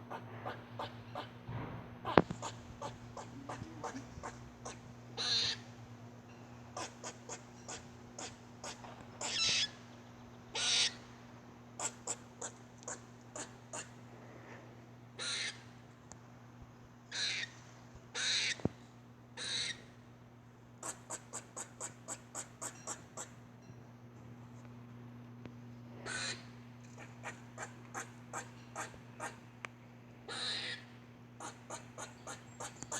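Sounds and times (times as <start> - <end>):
squirrel hoarse calls: 0.0 - 1.4, 2.0 - 5.7, 6.7 - 9.8, 10.5 - 11.0, 11.8 - 14.0, 15.2 - 15.6, 17.1 - 17.5, 18.2 - 18.6, 19.4 - 19.9, 20.8 - 23.4, 26.0 - 29.4, 30.3 - 32.9
squirrel chipping: 6.8 - 9.8, 31.4 - 32.9.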